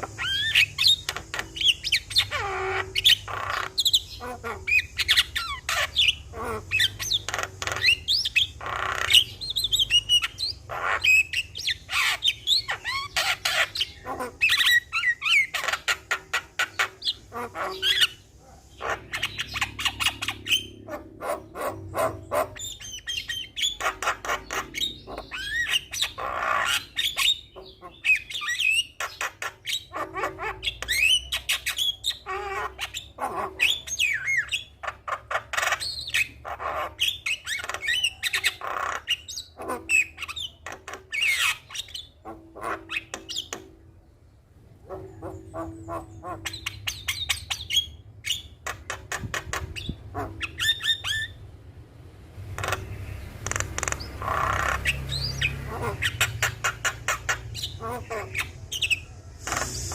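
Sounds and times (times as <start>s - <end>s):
myna bird singing: 0.0s - 51.6s, 52.3s - 59.9s.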